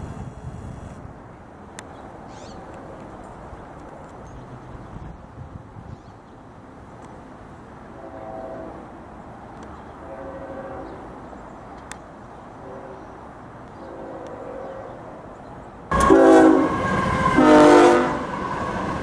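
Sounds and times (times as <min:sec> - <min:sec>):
locomotive air horn blasts: 0:07.9 - 0:09.0, 0:09.9 - 0:11.2, 0:12.5 - 0:15.3, 0:15.9 - 0:19.0.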